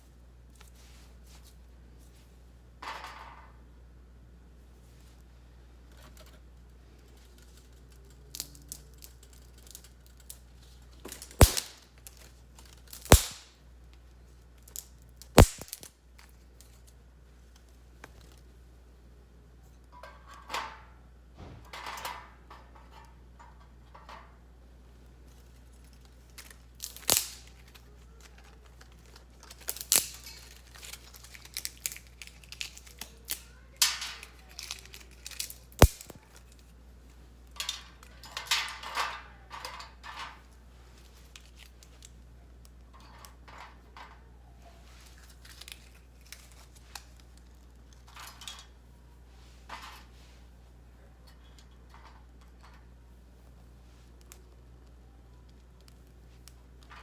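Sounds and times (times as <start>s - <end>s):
dry twigs snapping: 11.2s - 13.5s, 14.7s - 15.9s, 26.4s - 27.8s, 28.8s - 33.4s, 34.6s - 36.2s.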